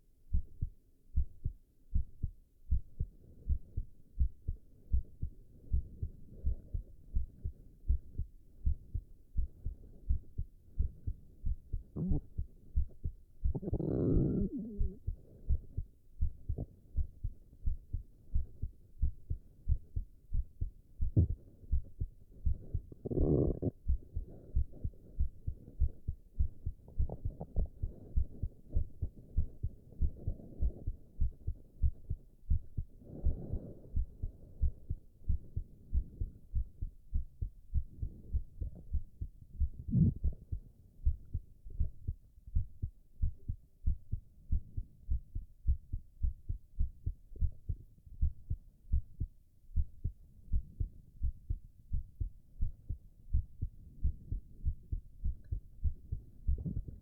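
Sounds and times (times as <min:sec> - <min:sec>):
heartbeat: 0:00.0 - 0:57.0
stomach gurgles: 0:11.9 - 0:15.2, 0:22.7 - 0:24.0, 0:26.9 - 0:30.6, 0:39.7 - 0:40.6, 0:56.5 - 0:57.0.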